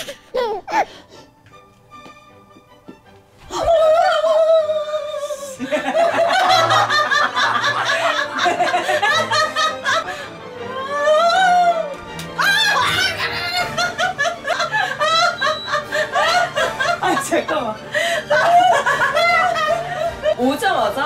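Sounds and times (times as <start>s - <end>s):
background music: 0.0s - 21.0s
hearty laughter: 5.6s - 10.3s, 13.0s - 20.4s.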